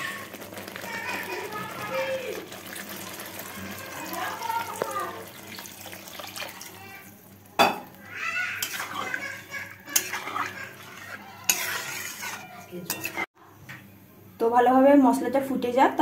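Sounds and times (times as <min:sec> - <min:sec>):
spoon stirring sauce in a pan: 0:08.2 - 0:13.3.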